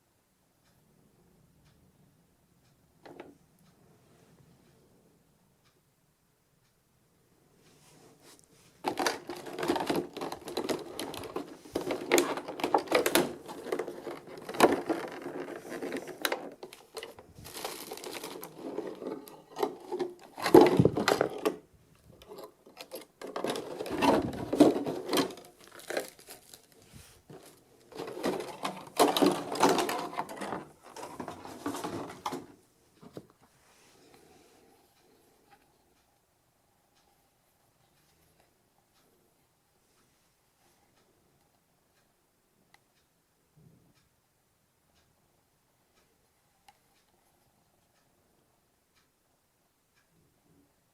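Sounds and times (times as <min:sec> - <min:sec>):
small clicks and knocks: 0:02.6 - 0:03.9, 0:08.4 - 0:34.2
plastic and cardboard rustling: 0:07.8 - 0:33.5.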